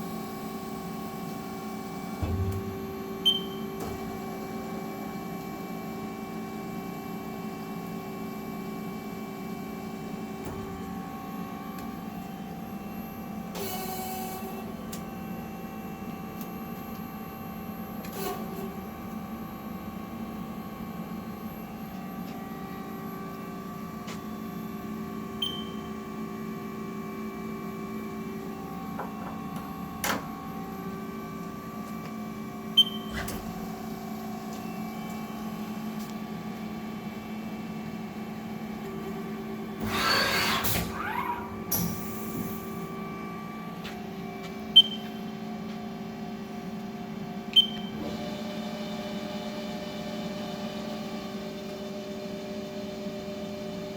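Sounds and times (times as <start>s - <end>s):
machine whining tones: 39.8s - 43.4s.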